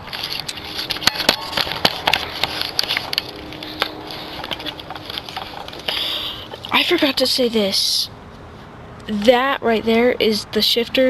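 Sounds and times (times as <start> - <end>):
crackling rustles: 0.0 - 11.0.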